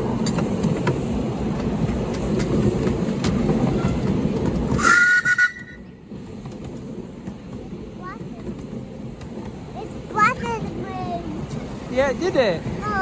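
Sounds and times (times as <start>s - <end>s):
miniature train rumbling: 0.0s - 13.0s
clicks over rail joints: 0.1s - 4.8s
two-note train whistle: 4.8s - 5.9s.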